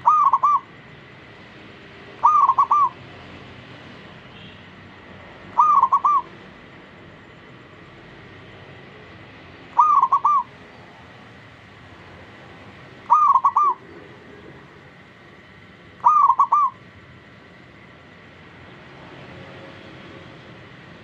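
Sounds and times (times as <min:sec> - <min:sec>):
dove cooing: 0:00.0 - 0:00.7, 0:02.2 - 0:03.0, 0:05.6 - 0:06.3, 0:09.8 - 0:10.6, 0:13.0 - 0:14.4, 0:16.0 - 0:16.8.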